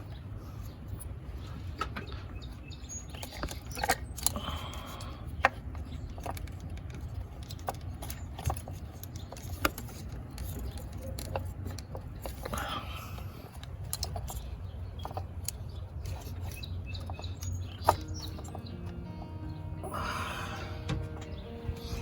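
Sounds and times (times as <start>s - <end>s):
low steady rumble: 17.6s - 22.0s.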